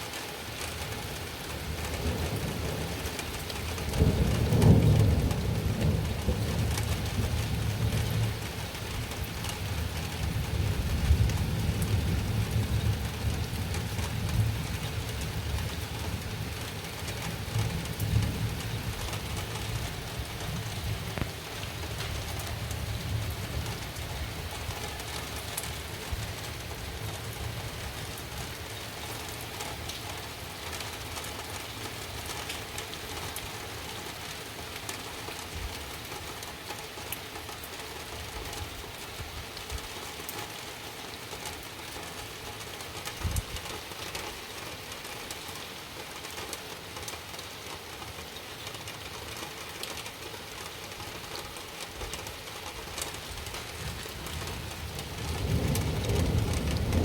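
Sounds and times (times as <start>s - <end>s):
steady rain falling: 0.0s - 57.0s
thunder rumble: 53.8s - 57.0s.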